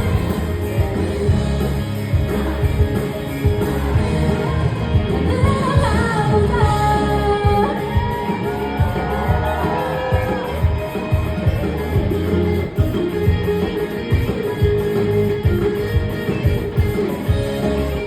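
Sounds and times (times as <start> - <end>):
person singing: 0.0 - 12.4
live rock band playing: 0.0 - 18.0.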